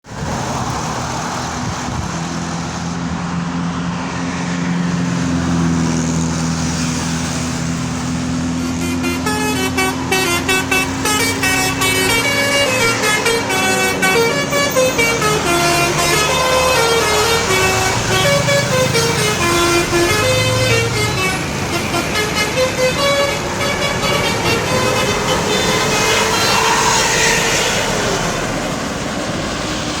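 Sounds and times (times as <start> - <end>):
bus engine and road noise: 0.0 - 30.0
multi-tone bus air horn tune: 8.4 - 28.5.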